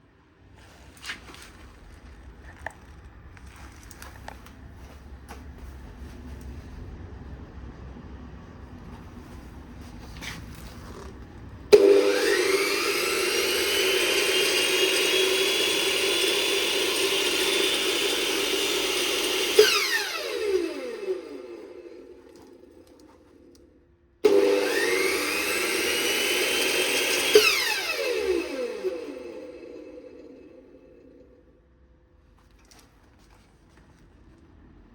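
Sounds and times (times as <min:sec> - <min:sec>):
cut-off saw running: 0:11.7 - 0:23.6, 0:24.2 - 0:31.4.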